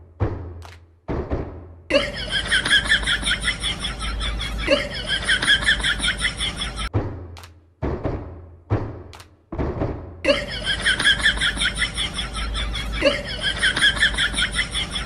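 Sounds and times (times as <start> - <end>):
raspy cackling laughter: 1.9 - 6.9, 10.3 - 15.0.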